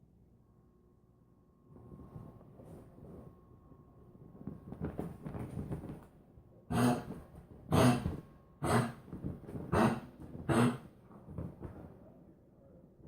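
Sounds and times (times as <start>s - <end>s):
pet hacking coughs: 6.7s - 9.0s, 9.7s - 10.9s.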